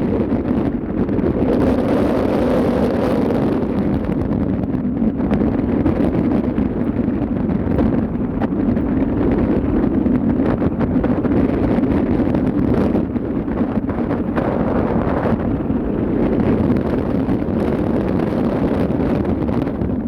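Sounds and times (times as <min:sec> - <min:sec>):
ship low rumble: 0:00.0 - 0:20.0
wind buffeting microphone: 0:00.0 - 0:20.0.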